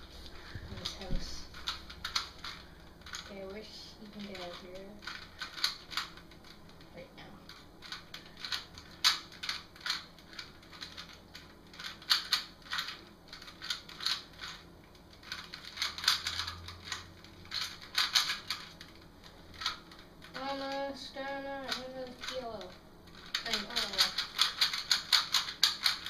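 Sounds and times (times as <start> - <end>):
plastic puzzle cube clicking: 4.2 - 6.6, 7.5 - 20.8, 21.6 - 26.0.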